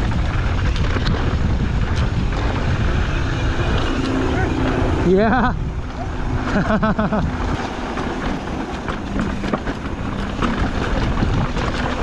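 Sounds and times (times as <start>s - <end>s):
wind on microphone: 0.0s - 12.0s
bike clattering over bumps: 7.5s - 12.0s
tyres crunching over dirt: 7.6s - 12.0s.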